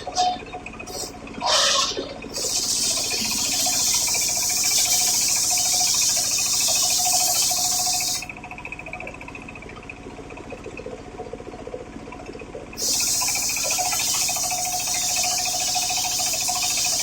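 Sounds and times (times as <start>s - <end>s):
saw motor humming: 2.3s - 8.3s, 12.8s - 17.0s.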